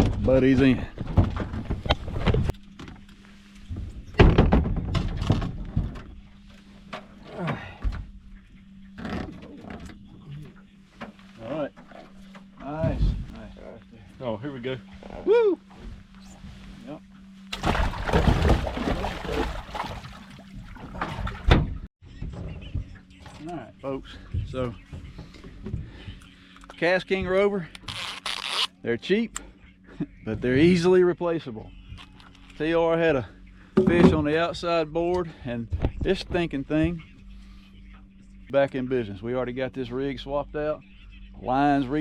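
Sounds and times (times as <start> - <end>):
knocks and thumps on a boat: 0.0 - 3.0, 3.7 - 6.2, 17.5 - 23.0, 33.8 - 34.6
water splashing: 17.5 - 21.5
faint steady hum: 22.5 - 42.0.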